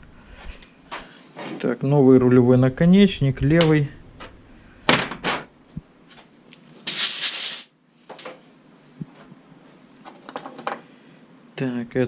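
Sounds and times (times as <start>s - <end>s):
pressurised spray hiss: 6.8s - 7.7s
clicks and knocks of parts handled: 10.0s - 10.8s.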